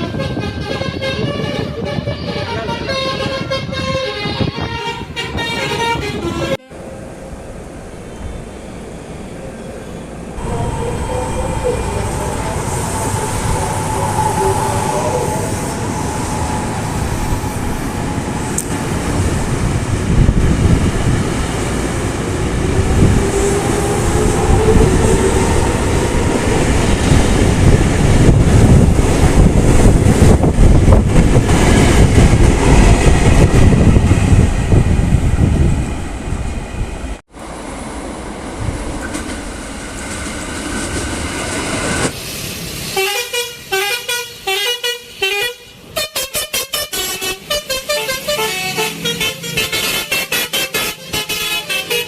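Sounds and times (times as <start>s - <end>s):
train rumble: 0.0s - 52.0s
whining tone shifting pitch: 6.8s - 19.2s.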